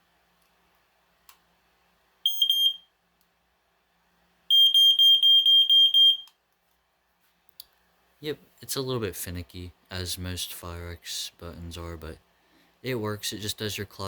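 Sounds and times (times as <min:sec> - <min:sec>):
smoke alarm shrill pulsing tone: 0:02.2 - 0:02.9, 0:04.5 - 0:06.3.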